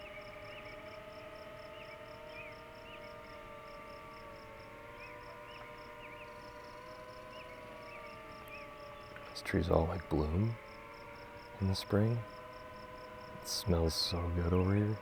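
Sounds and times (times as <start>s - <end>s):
insect chirping: 0.0s - 15.0s
steady hum: 0.0s - 15.0s
bird chirps: 1.6s - 3.3s, 4.8s - 10.7s.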